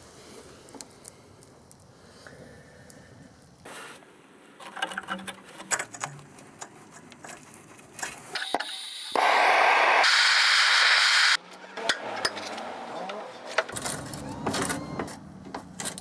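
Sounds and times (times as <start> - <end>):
welder hissing: 8.6 - 11.4.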